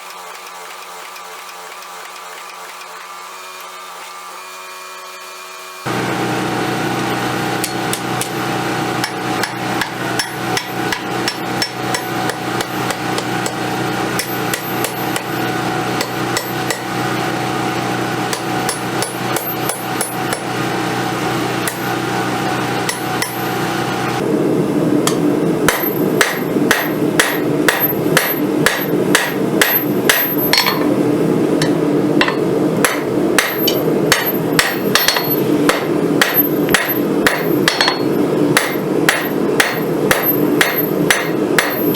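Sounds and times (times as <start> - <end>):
steady hum: 5.9 - 41.9
hammer striking hot steel: 6.0 - 17.1, 18.2 - 20.6, 21.6 - 22.0, 22.7 - 24.0, 25.0 - 31.0, 31.6 - 41.9.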